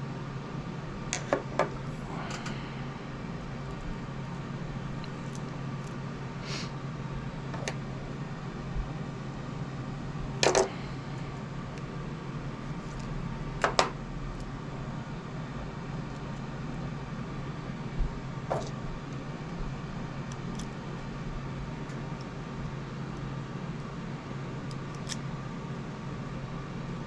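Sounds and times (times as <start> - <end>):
steady low hum: 0.0 - 27.0
tools clicking and knocking: 1.2 - 2.6.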